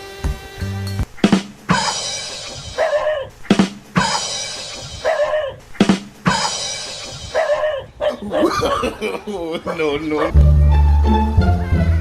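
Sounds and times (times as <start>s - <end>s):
background music with drums: 0.0s - 7.8s, 10.4s - 12.0s.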